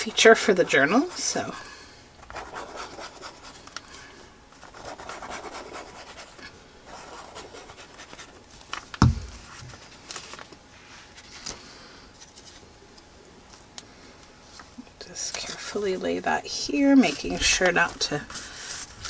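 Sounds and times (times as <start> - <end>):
dull thump: 9.0 - 9.8
paper rubbing and rustling: 17.0 - 19.0.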